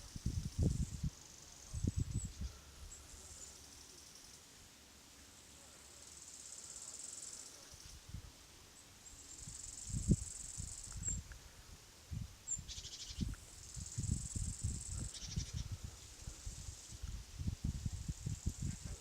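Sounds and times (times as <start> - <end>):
insects chirping: 0.0 - 4.6, 5.3 - 8.0, 8.7 - 19.0
short buzzy insect trills: 12.5 - 19.0.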